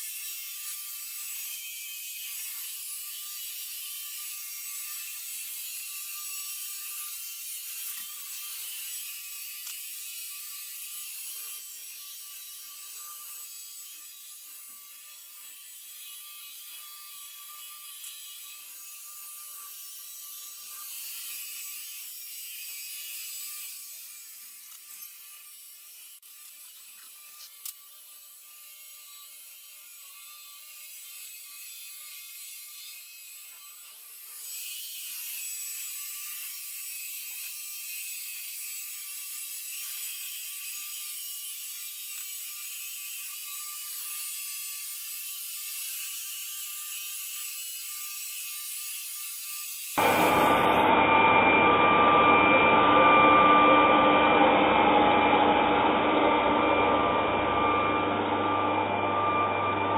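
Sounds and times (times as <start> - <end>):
robot vacuum whirring: 50.0 - 59.9.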